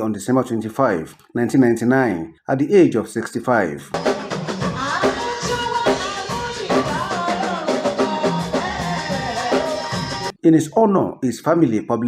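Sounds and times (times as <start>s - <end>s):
background music with drums: 4.0s - 10.3s.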